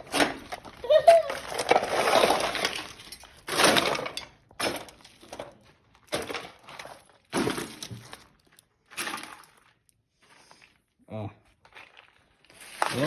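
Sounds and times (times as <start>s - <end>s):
garage clutter clattering and scraping: 0.0s - 8.3s.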